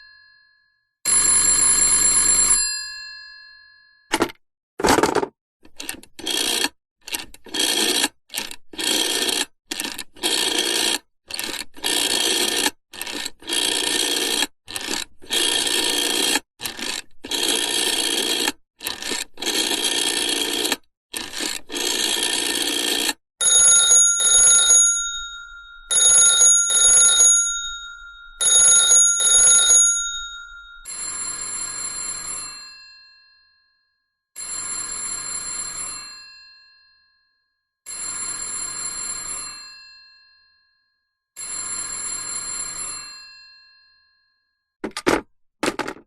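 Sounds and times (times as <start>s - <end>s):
telephone bells ringing: 0.0s - 3.9s, 23.4s - 33.2s, 37.9s - 40.1s, 41.4s - 43.9s.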